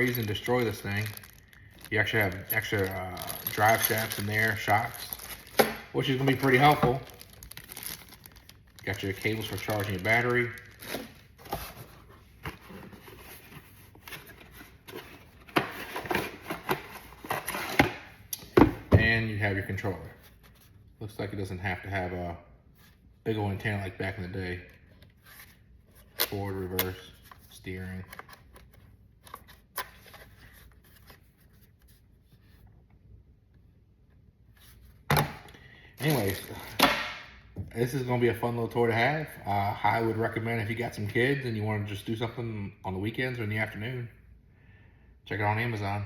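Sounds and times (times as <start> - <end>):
packaging rustling: 0.0 - 17.9.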